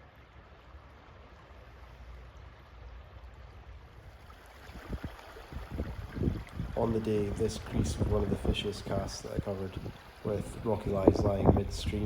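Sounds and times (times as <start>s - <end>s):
stream flowing: 0.0s - 12.0s.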